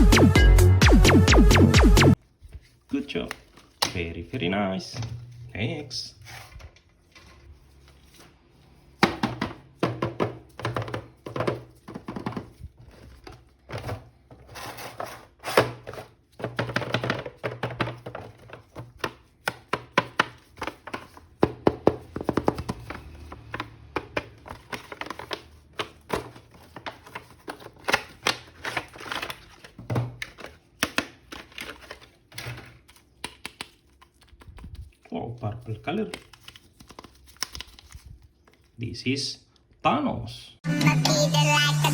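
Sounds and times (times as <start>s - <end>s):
plastic packaging clicks and knocks: 9.0s - 14.4s, 15.6s - 34.1s.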